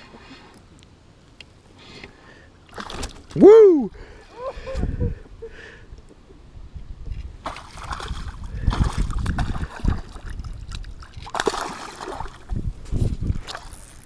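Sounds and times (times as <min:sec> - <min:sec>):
water splashing around a kayak: 0:07.4 - 0:12.7.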